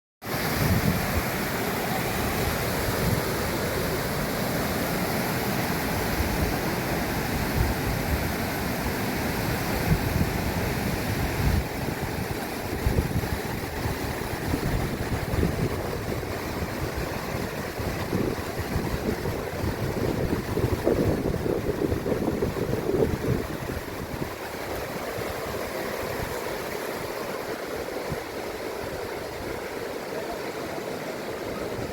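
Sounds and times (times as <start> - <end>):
running water rushing: 0.2 - 31.9
wind buffeting microphone: 0.5 - 1.5, 5.8 - 27.2.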